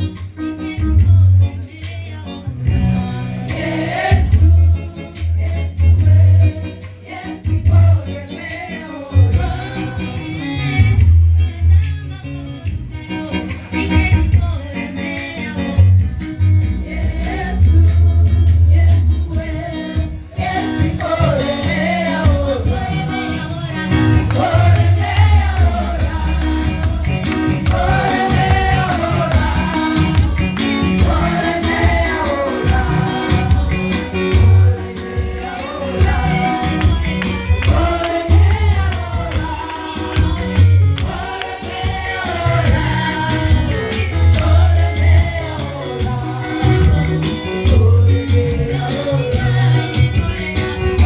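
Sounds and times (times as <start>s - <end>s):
band with strong bass: 0.0s - 51.0s
choir singing gospel: 2.5s - 11.1s, 13.4s - 51.0s
tambourine on the beat: 23.9s - 51.0s.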